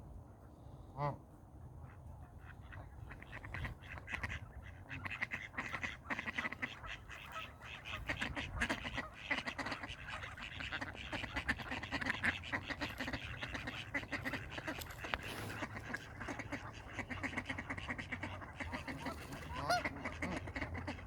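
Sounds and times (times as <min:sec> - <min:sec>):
ducks quacking: 0:01.8 - 0:21.0.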